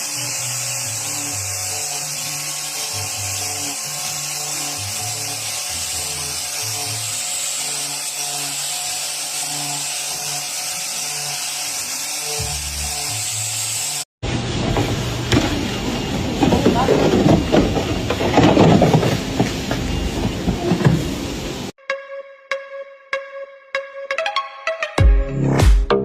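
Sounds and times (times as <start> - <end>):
background music with bass line: 21.8 - 26.0.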